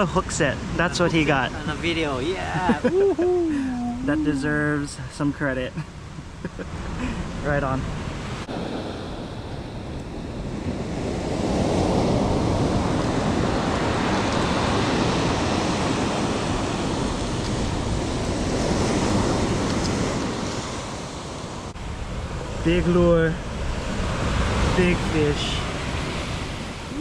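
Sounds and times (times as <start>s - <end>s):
ocean surf washing in: 0.0s - 27.0s
wind on microphone: 6.0s - 27.0s.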